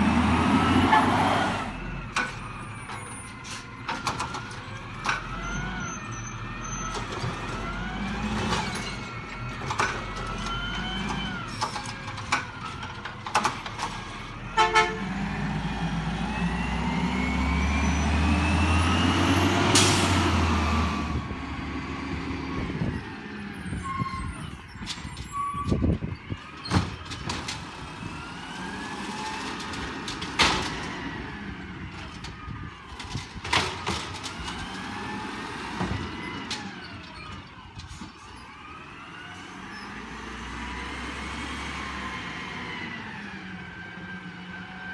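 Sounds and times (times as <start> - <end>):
garbage trucks driving past: 0.0 - 44.9.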